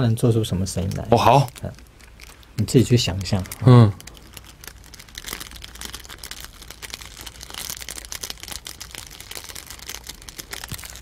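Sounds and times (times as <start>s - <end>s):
plastic wrapper crinkling: 0.4s - 11.0s.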